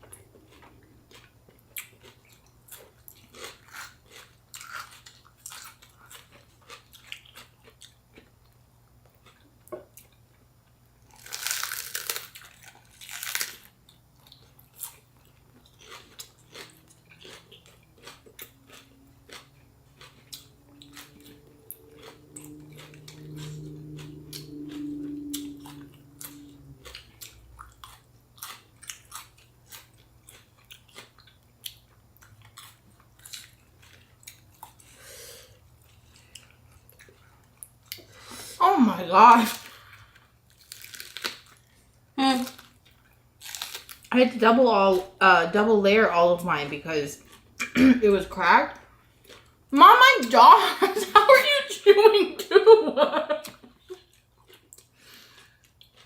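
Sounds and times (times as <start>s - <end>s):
crunchy chewing: 0.0s - 10.4s, 11.0s - 38.1s, 39.6s - 41.8s, 42.4s - 44.1s, 53.9s - 56.0s
low hum: 16.8s - 28.4s.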